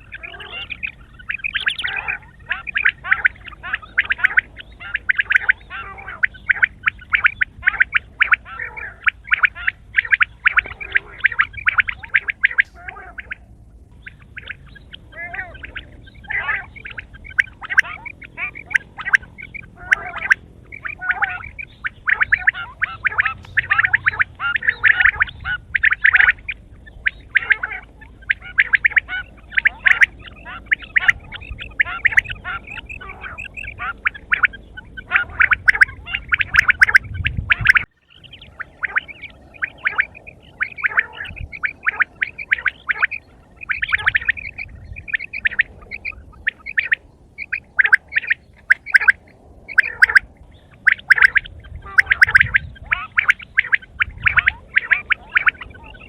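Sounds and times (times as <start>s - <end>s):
quail calling: 0.0s - 56.0s.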